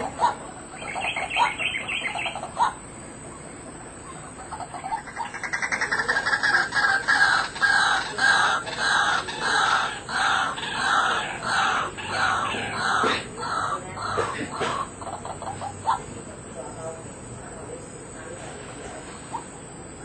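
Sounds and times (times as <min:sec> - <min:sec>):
waterhen calling harshly: 0:00.0 - 0:02.8, 0:04.6 - 0:16.0.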